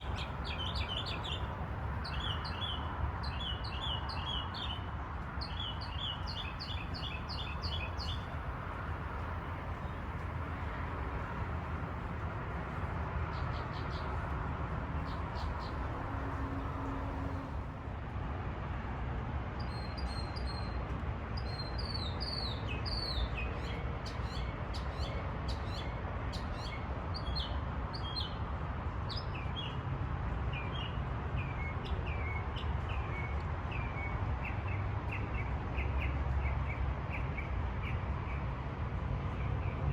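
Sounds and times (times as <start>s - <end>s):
small birds chirping: 0.0s - 8.3s.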